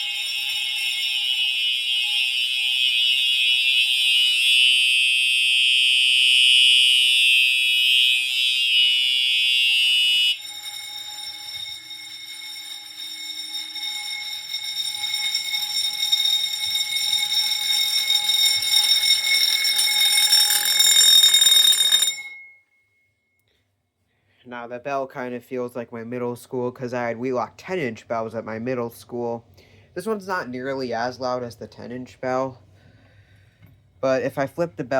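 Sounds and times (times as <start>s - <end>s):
fire alarm horn: 0.0s - 22.5s
fire alarm bell ringing: 0.0s - 23.2s.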